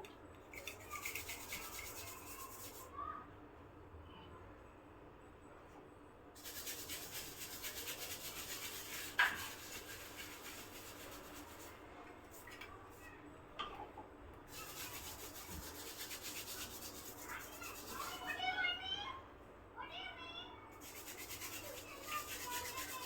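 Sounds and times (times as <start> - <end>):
scratchy rubbing and scraping: 0.5 - 2.9, 6.4 - 12.5, 14.5 - 18.3, 20.8 - 23.0.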